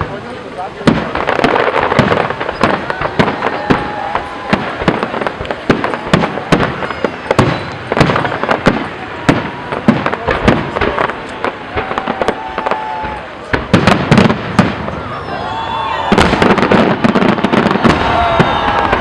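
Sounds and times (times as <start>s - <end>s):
fireworks bursting with sharp bangs: 0.0s - 19.0s
fireworks crackling: 0.0s - 19.0s.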